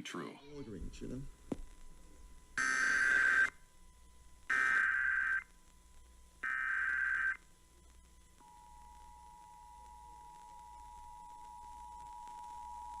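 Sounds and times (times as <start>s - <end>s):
digital data tones: 2.6s - 3.6s, 4.5s - 5.5s.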